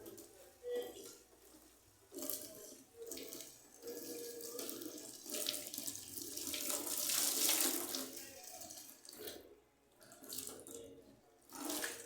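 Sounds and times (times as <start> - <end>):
tap water running into sink: 2.1 - 9.4.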